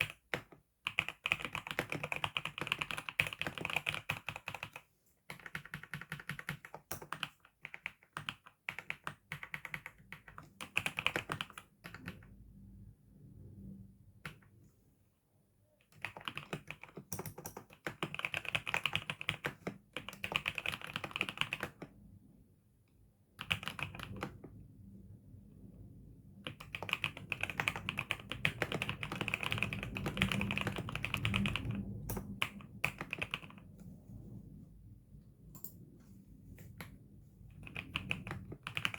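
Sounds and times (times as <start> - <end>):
keyboard typing: 0.0 - 12.3, 15.9 - 21.9, 23.4 - 24.4, 26.4 - 33.8, 37.6 - 38.9.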